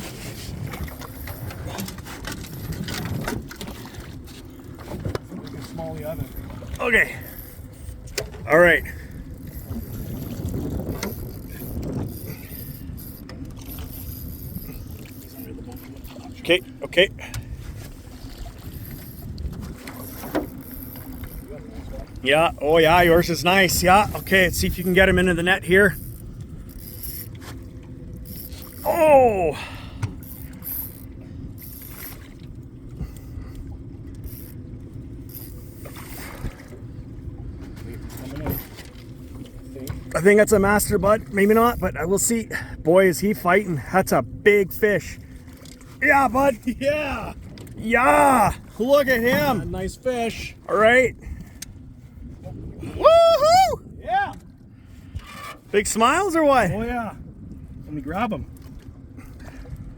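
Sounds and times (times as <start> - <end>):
water against boat: 0.0 - 59.9
wind: 0.0 - 59.9
fishing reel scraping and clicking: 0.9 - 3.8, 9.1 - 16.0, 18.6 - 21.6, 22.8 - 27.6, 28.2 - 29.0, 30.2 - 32.3, 34.1 - 34.6, 35.2 - 36.5.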